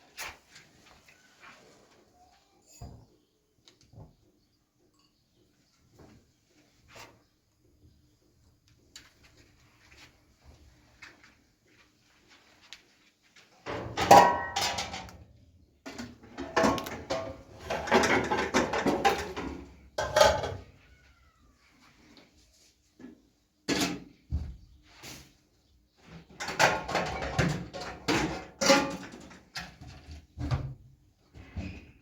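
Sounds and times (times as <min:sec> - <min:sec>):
hard objects clattering: 0:13.7 - 0:15.2, 0:15.9 - 0:20.7, 0:26.3 - 0:29.8.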